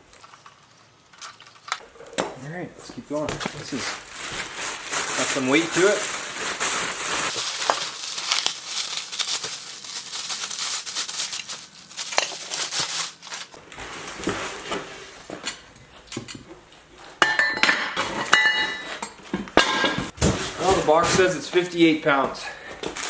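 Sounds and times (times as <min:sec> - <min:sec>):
metal parts knocking and clinking: 0:00.1 - 0:02.0
packaging rustling and crinkling: 0:01.2 - 0:17.2, 0:18.0 - 0:23.0.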